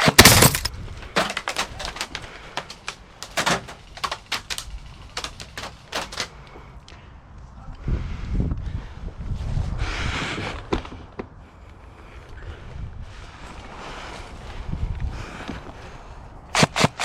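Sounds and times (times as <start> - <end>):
airsoft guns firing: 16.6 - 17.0.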